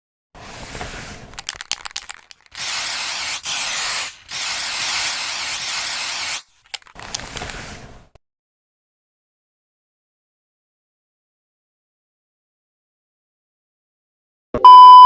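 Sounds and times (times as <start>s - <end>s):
quick clicks: 1.4s - 3.6s, 6.3s - 7.6s.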